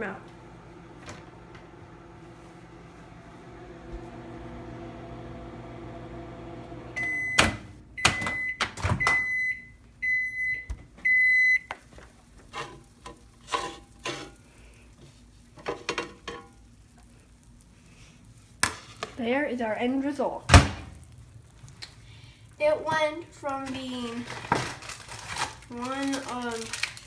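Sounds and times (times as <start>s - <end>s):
microwave oven humming: 0.0s - 18.5s
microwave end-of-cycle beeps: 0.5s - 11.7s.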